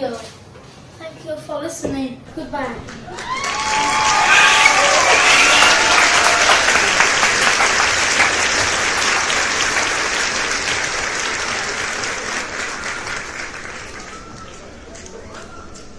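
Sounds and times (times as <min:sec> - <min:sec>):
audience applauding: 0:03.0 - 0:15.2.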